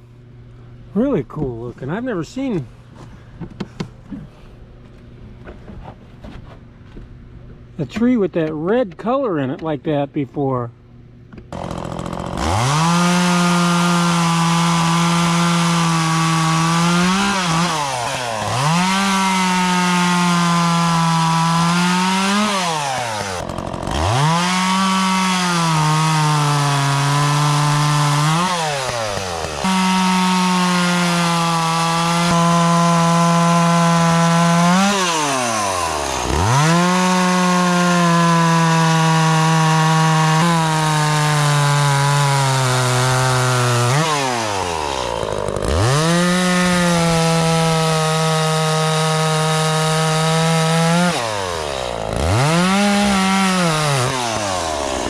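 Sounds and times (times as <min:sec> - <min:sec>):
chainsaw cutting wood: 0:11.4 - 0:55.0.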